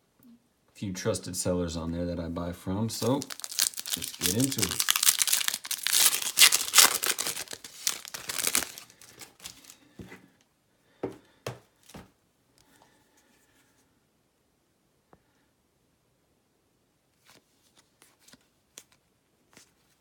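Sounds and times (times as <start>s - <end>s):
packaging crinkling and tearing: 2.9s - 9.8s.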